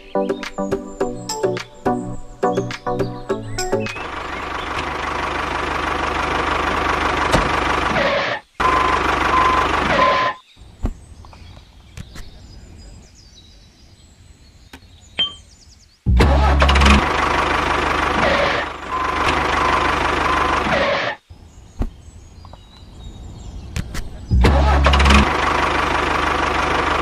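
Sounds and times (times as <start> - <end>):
small tractor engine running: 3.9 - 10.3, 16.2 - 21.1, 24.5 - 27.0.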